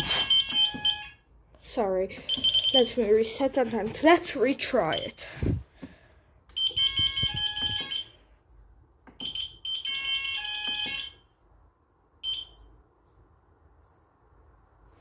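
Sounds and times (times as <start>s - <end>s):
fire alarm high-pitched bursts: 0.0s - 1.3s, 2.2s - 3.0s, 6.5s - 8.2s, 9.2s - 11.4s, 12.2s - 12.6s.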